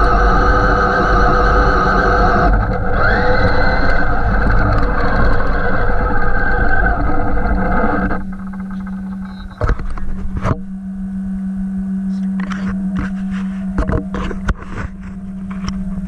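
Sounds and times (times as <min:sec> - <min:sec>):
rc truck motor and rattling: 0:00.0 - 0:10.5
steady low hum: 0:00.0 - 0:16.0.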